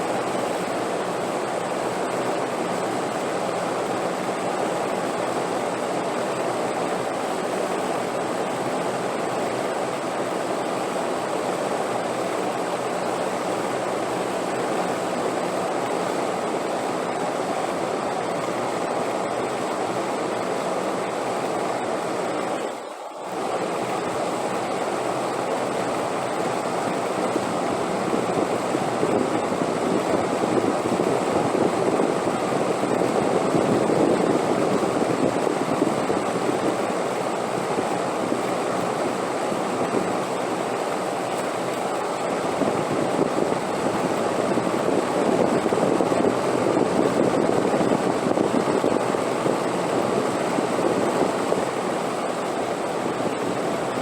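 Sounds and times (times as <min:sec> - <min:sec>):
rushing wind: 0:26.5 - 0:54.0.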